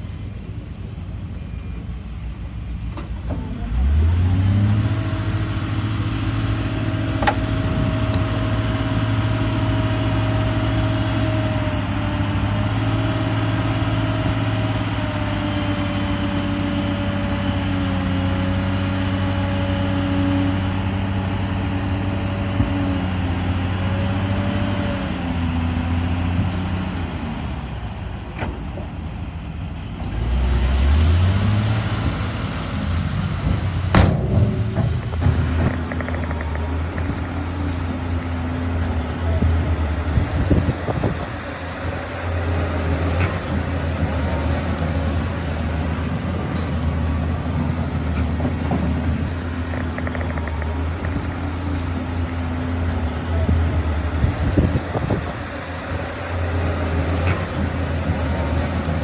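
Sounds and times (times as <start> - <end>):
heavy diesel engine revving: 0.0 - 59.0
machinery whine: 32.8 - 56.8.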